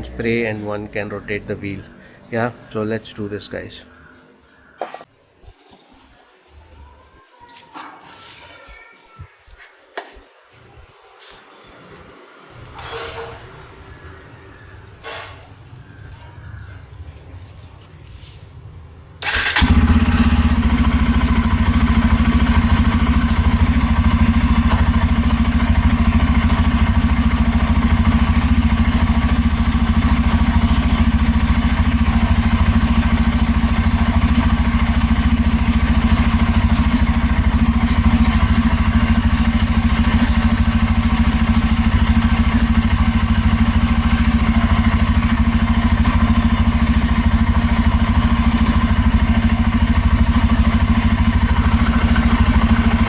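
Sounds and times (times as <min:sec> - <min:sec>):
motorcycle engine idling: 0:19.2 - 0:53.0
aerosol spray hissing: 0:27.6 - 0:37.2, 0:39.8 - 0:44.2.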